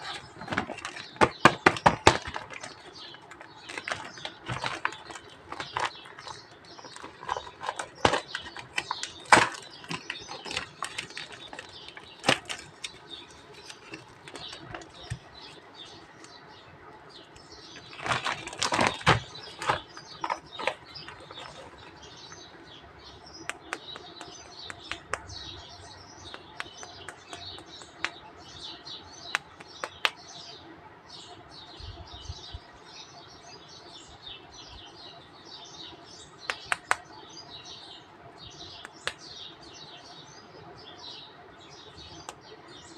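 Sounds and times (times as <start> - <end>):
plastic packaging crinkling: 0.0 - 16.4, 17.7 - 22.4
sharp clicks and taps: 23.4 - 25.4, 26.3 - 28.2, 29.3 - 30.2, 36.4 - 37.1.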